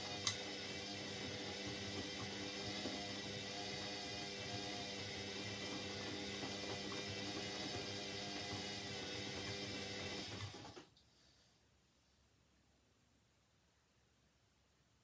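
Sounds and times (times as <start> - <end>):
washing machine running: 0.0 - 10.9.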